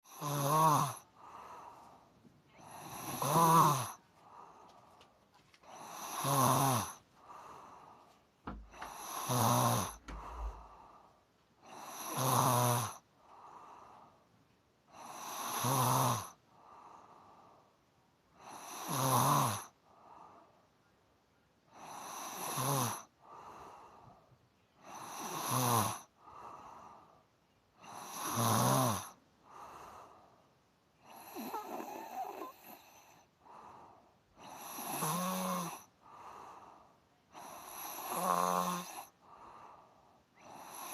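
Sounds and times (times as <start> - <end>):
person snoring: 0.1 - 4.6, 5.6 - 11.0, 11.6 - 14.0, 14.9 - 17.1, 18.4 - 19.8, 21.7 - 24.0, 24.8 - 27.0, 27.8 - 30.2, 31.0 - 39.8, 40.4 - 40.9
soft breath: 1.0 - 3.2, 3.9 - 6.0, 7.0 - 9.0, 9.9 - 11.8, 13.1 - 14.4, 16.5 - 17.8, 19.8 - 20.9, 23.0 - 25.1, 26.0 - 28.0, 29.4 - 34.9, 35.8 - 37.7, 38.9 - 40.9.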